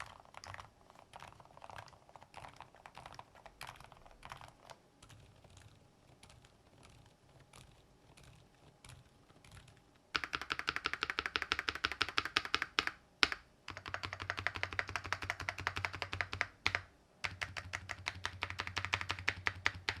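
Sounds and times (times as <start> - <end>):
mechanical keyboard typing: 0.0 - 20.0.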